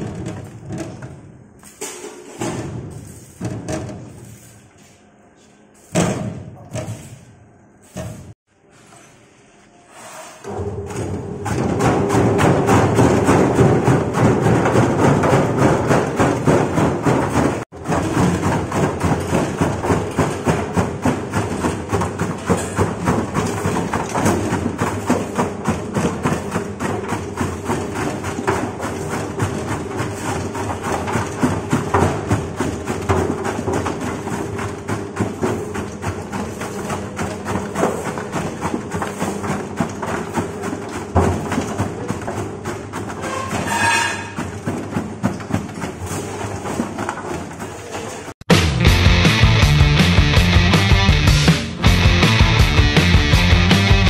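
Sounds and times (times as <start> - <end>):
rapid clatter of chopping: 11.4 - 43.6, 44.3 - 48.5.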